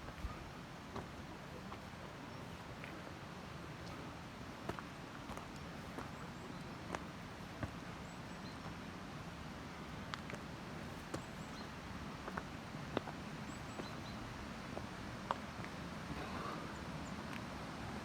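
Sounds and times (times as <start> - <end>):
steps tapping on rocky trail: 0.0 - 1.9, 12.2 - 16.4
steady outdoor hiss: 0.0 - 18.0.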